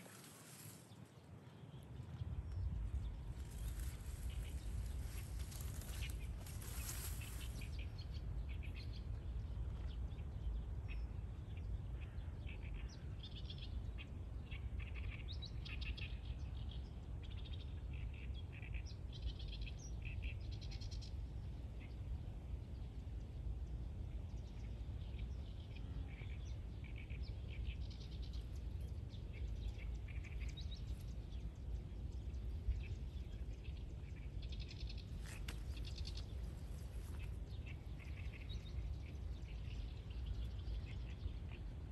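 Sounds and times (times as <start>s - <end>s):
small birds chirping: 0.0s - 9.0s, 24.6s - 41.9s
steady low rumble: 0.0s - 41.9s.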